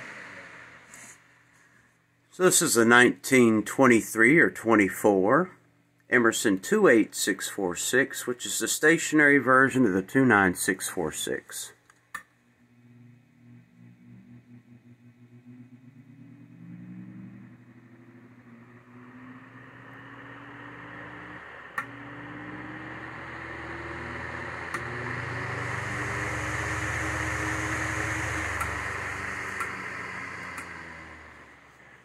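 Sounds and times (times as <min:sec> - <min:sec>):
electric fan motor whine: 0:00.0 - 0:03.1, 0:12.4 - 0:32.0
rush of air from fan blades: 0:12.9 - 0:32.0
sharp clicks: 0:28.6 - 0:28.8.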